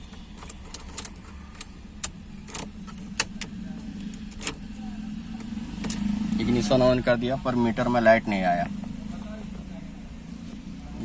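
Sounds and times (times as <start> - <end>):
ignition key clicks and jingles: 0.0 - 4.8.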